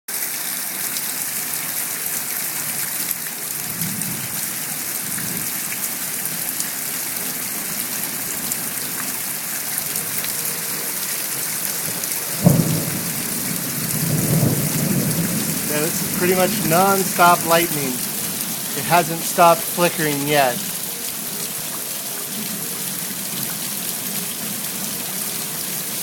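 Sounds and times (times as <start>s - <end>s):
steady rain hiss: 3.7s - 26.0s
loud thunderclap: 12.4s - 16.2s
thunder rolling: 12.4s - 16.6s.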